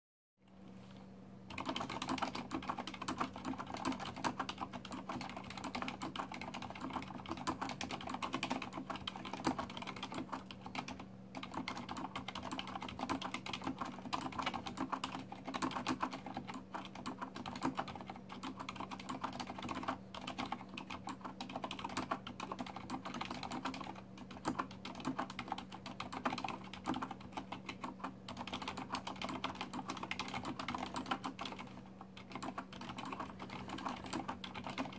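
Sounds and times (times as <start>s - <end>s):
fast typing on mechanical keyboard: 1.5s - 34.9s.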